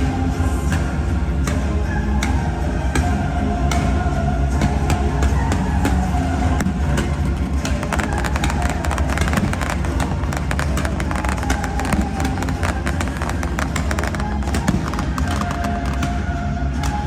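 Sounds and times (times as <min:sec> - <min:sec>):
loud music: 0:00.0 - 0:17.0
fireworks cracks and bangs: 0:04.7 - 0:17.0.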